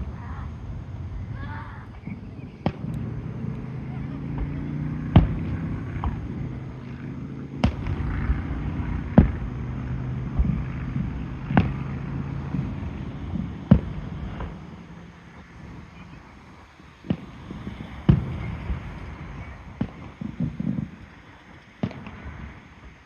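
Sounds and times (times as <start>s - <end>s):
steady low hum: 0.0s - 22.9s
fireworks bursting with booms: 0.0s - 23.0s
small firework pops: 1.8s - 3.7s, 4.3s - 6.5s, 7.6s - 9.7s, 10.3s - 12.8s, 13.4s - 14.7s, 17.0s - 22.9s.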